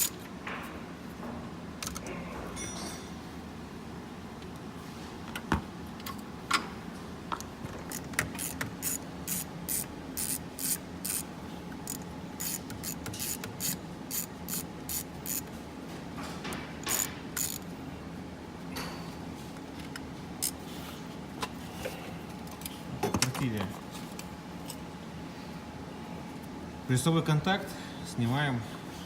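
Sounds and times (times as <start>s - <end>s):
ratchet wrench clicking: 7.9s - 15.5s, 16.8s - 17.6s.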